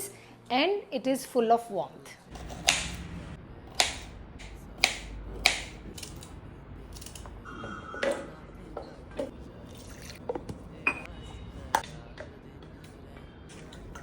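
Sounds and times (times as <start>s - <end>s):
low hum: 2.3s - 14.0s
kitchen utensils clicking and knocking: 3.8s - 11.1s.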